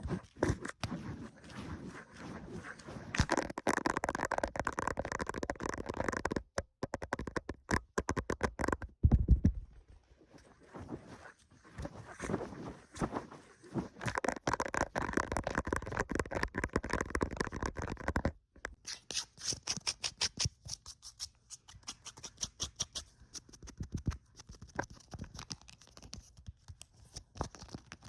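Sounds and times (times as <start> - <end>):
rapid tapping and scratching: 0.0 - 9.4, 10.7 - 18.4.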